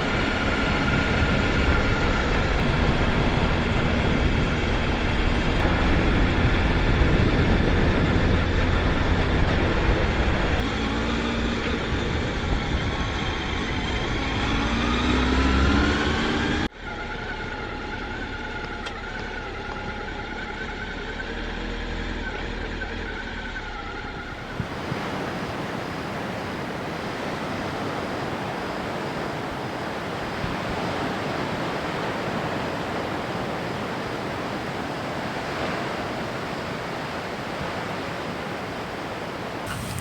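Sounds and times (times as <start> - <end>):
wind rush on microphone: 0.0 - 16.7, 24.3 - 40.0
motorcycle engine accelerating: 0.0 - 30.6, 39.6 - 40.0.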